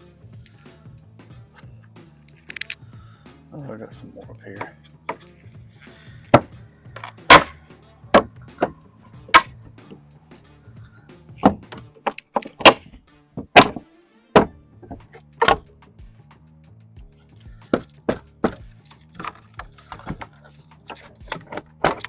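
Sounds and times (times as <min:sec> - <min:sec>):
hammer knocking on wooden fence: 0:06.3 - 0:06.5, 0:11.4 - 0:11.8, 0:13.4 - 0:13.8, 0:14.4 - 0:15.7, 0:17.6 - 0:18.6.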